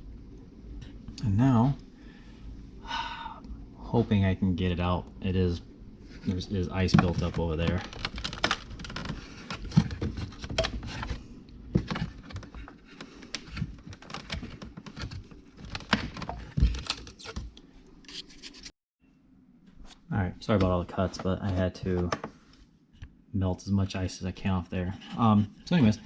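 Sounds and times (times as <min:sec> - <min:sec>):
ice and plastic scraping: 0:06.2 - 0:11.2, 0:11.8 - 0:17.5.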